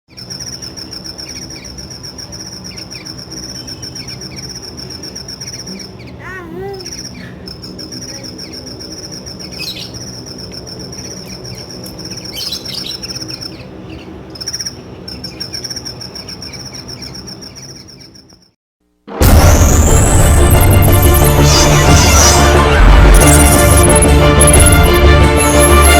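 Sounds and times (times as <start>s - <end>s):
hummingbird high pulsing call: 0.1s - 18.4s
low steady background hum: 0.2s - 18.1s.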